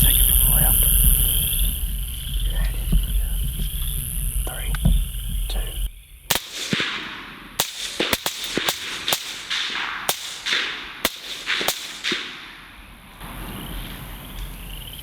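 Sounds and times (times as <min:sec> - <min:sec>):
insects chirping: 0:00.0 - 0:15.0
rapid gunfire with echo: 0:06.3 - 0:12.8.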